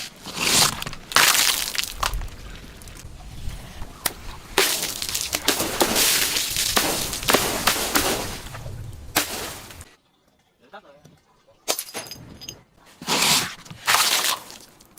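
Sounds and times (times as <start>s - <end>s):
crunching glass: 0.0s - 3.0s, 4.5s - 8.4s, 13.8s - 14.9s
glass bottles breaking: 11.6s - 12.7s.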